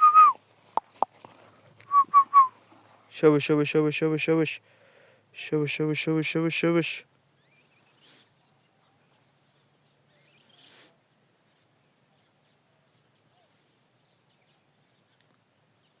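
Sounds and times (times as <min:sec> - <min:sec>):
high insect trill: 0:00.0 - 0:16.0
faint bird chirps: 0:07.2 - 0:16.0.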